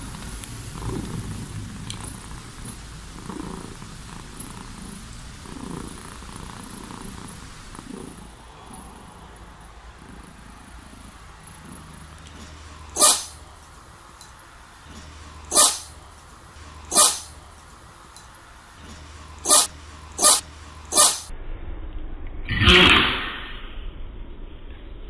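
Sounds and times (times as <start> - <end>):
cat sneezing: 12.9 - 13.4, 15.5 - 16.0, 16.9 - 17.4, 19.4 - 21.3.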